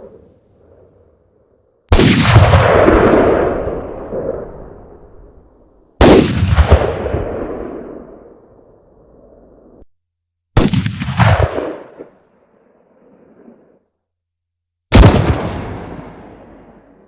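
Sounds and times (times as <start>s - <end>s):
rifle shots: 1.9s - 3.7s, 6.0s - 8.0s, 10.6s - 12.2s, 14.9s - 16.9s.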